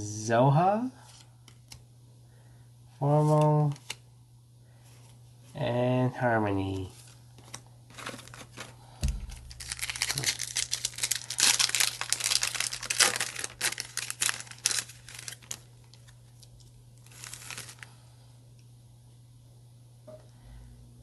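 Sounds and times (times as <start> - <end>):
foil wrapper crinkling and tearing: 7.4 - 18.0.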